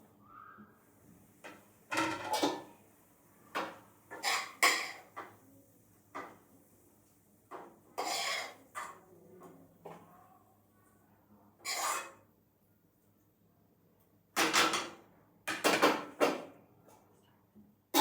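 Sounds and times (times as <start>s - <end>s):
dishes and utensils clinking: 1.4s - 2.8s, 3.5s - 5.4s, 6.1s - 6.4s, 7.5s - 9.0s, 11.6s - 12.2s, 14.4s - 16.5s.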